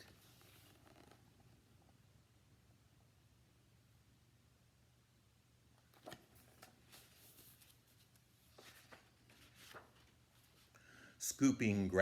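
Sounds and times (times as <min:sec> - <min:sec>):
book page turning: 0:00.0 - 0:01.2, 0:05.9 - 0:10.7.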